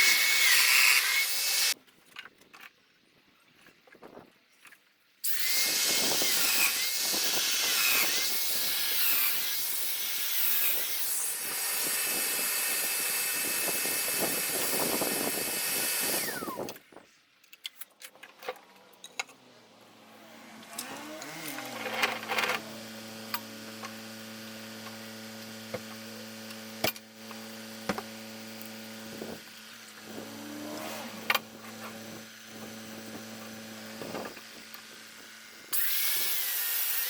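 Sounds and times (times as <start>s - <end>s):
power tool cutting wood: 0.0s - 1.8s, 5.3s - 16.8s, 19.7s - 37.0s.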